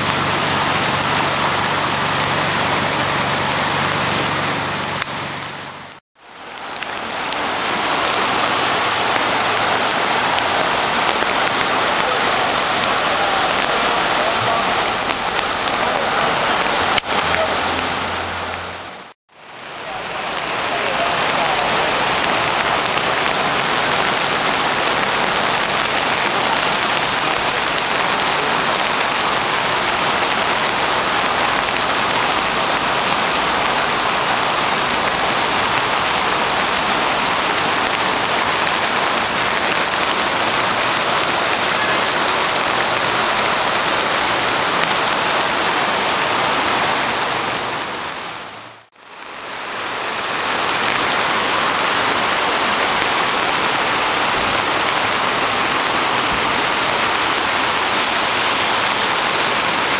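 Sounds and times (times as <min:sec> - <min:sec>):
creek water rushing: 0:00.0 - 0:59.9.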